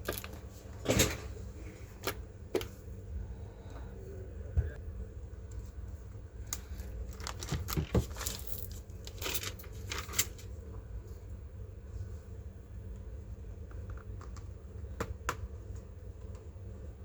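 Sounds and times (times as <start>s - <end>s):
low hum: 0.0s - 17.0s
crinkly plastic rustling: 6.5s - 10.6s.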